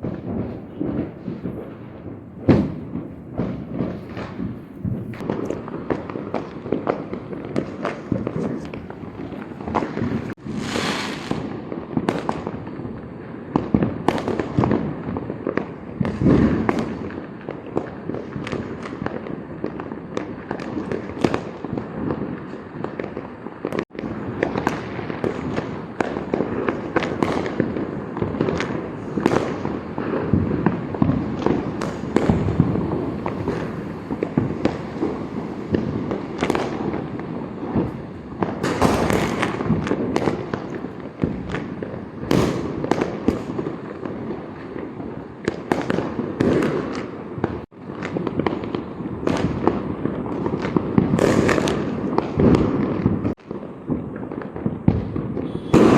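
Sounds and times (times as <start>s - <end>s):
firecrackers and fireworks banging: 0.0s - 55.9s
firework hiss: 7.1s - 11.5s, 24.0s - 44.7s.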